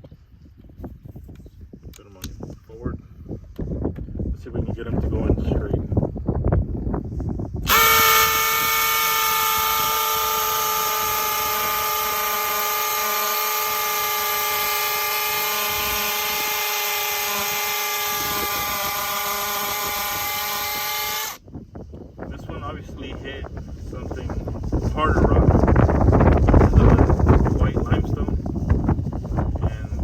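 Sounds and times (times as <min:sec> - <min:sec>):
hammer drills drilling into stone: 0:07.7 - 0:21.4.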